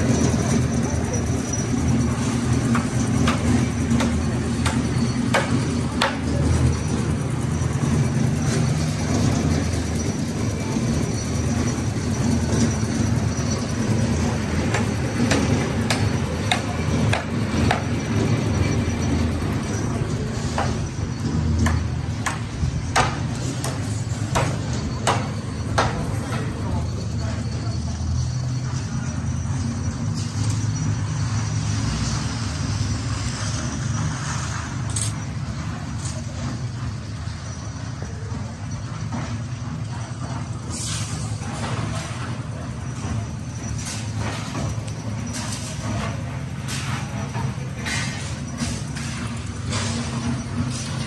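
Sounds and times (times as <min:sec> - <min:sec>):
engine droning: 0:00.0 - 0:51.0
sharp knocks and clanks: 0:01.4 - 0:27.4, 0:43.0 - 0:51.0.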